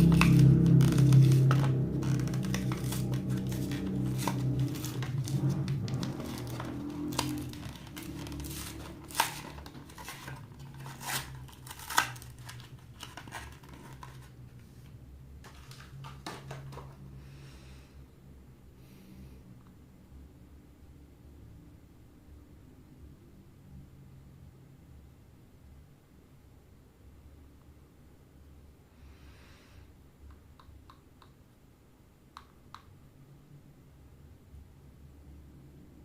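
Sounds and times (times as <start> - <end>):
packaging crinkling and tearing: 0.0 - 14.6, 15.4 - 17.0.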